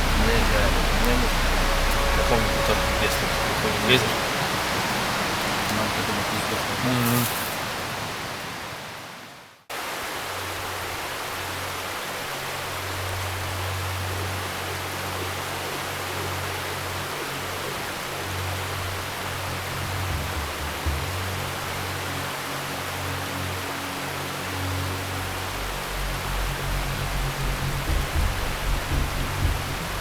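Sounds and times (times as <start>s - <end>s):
background music low sustained notes: 0.0s - 6.6s, 16.5s - 30.0s
mountain river rushing: 0.0s - 30.0s.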